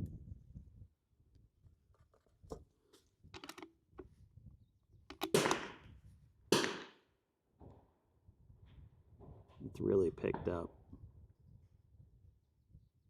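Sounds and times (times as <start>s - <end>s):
rifle shots: 5.2s - 5.8s, 6.5s - 7.0s.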